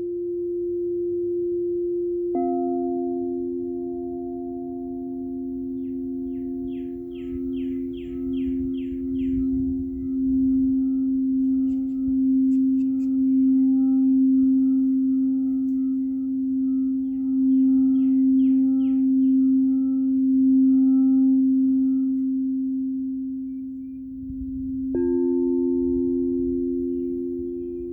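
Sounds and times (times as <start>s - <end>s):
singing bowl ringing: 0.0s - 27.9s
bird chirping: 4.8s - 22.4s, 23.2s - 24.5s, 25.8s - 27.9s.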